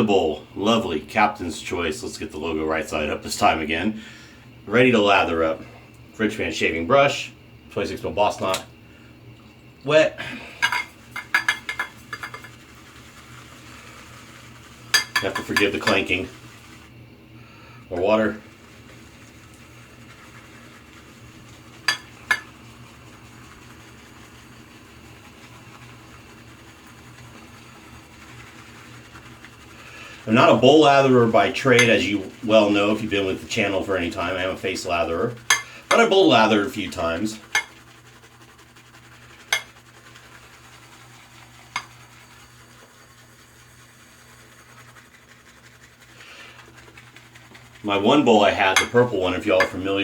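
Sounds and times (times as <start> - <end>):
metal bowl clinking: 10.6 - 12.5, 14.9 - 16.3, 21.8 - 22.5, 31.4 - 33.3, 35.4 - 36.8, 37.4 - 37.8, 39.5 - 39.8, 48.3 - 50.0
brush clinking against metal bowl: 10.6 - 16.8, 17.9 - 23.9, 25.2 - 42.9, 46.2 - 50.0
shaving brush swishing lather: 11.0 - 17.0, 17.9 - 50.0.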